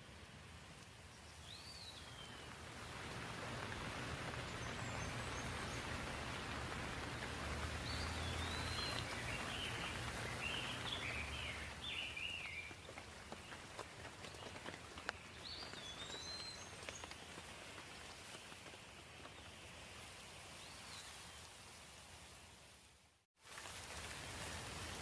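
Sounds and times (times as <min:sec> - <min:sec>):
steady rain falling: 0:00.0 - 0:25.0
birds whistling and chirping: 0:07.8 - 0:12.8, 0:15.2 - 0:17.1.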